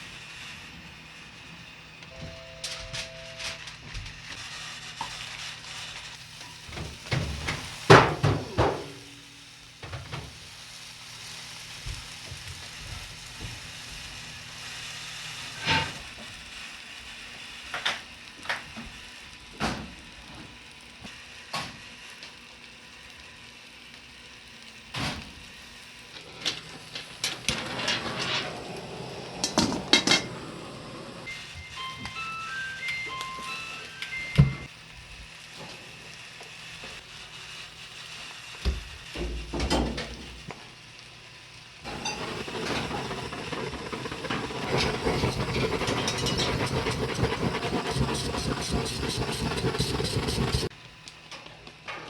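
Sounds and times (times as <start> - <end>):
dishes and utensils clinking: 41.9 - 43.4, 44.3 - 50.7.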